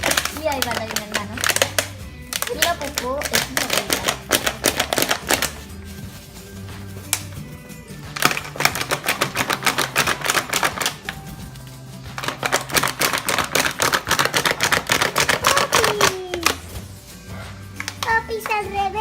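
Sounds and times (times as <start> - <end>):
background music: 0.0 - 19.0
rapid clicking: 8.1 - 16.6.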